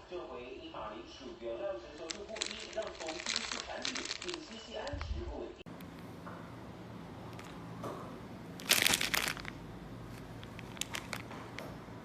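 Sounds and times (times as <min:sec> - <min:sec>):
packaging crinkling and crunching: 0:01.9 - 0:05.4, 0:08.6 - 0:11.6.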